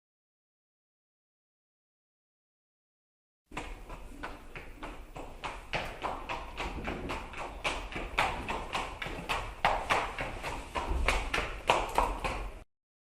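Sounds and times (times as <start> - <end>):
horse hoofbeats clip-clopping: 3.5 - 12.6.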